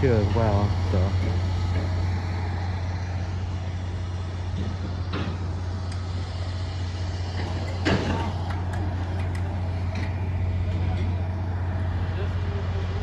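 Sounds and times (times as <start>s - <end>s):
large engine humming: 0.0s - 13.0s.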